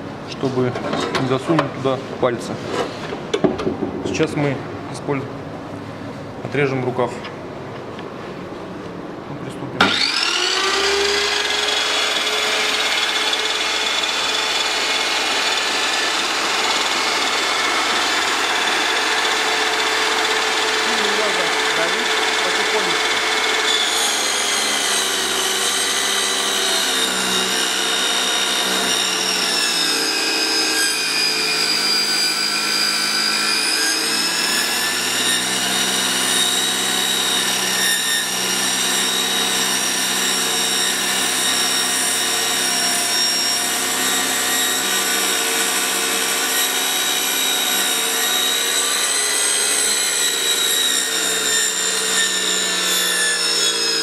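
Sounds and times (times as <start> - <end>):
cutting machine motor whine: 9.8 - 30.3.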